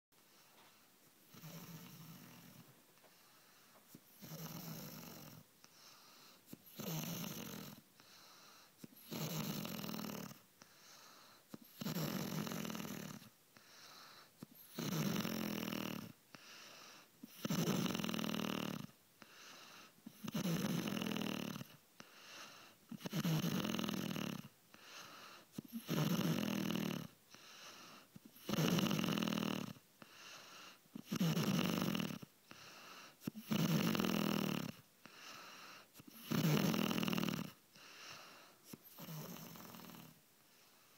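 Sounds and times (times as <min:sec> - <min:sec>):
soft breathing: 0:00.2 - 0:06.8, 0:07.6 - 0:09.1, 0:10.3 - 0:14.8, 0:16.3 - 0:17.4, 0:19.2 - 0:20.3, 0:21.6 - 0:23.2, 0:24.7 - 0:25.9, 0:27.3 - 0:28.4, 0:30.0 - 0:31.1, 0:32.4 - 0:33.4, 0:34.7 - 0:36.4, 0:37.4 - 0:40.9
woman snoring loudly: 0:01.3 - 0:02.6, 0:04.1 - 0:05.4, 0:06.7 - 0:07.8, 0:09.0 - 0:10.4, 0:11.8 - 0:13.3, 0:14.7 - 0:16.2, 0:17.3 - 0:19.0, 0:20.1 - 0:21.8, 0:22.9 - 0:24.5, 0:25.6 - 0:27.2, 0:28.4 - 0:29.8, 0:31.0 - 0:32.3, 0:33.3 - 0:34.8, 0:36.0 - 0:37.6, 0:38.9 - 0:40.2.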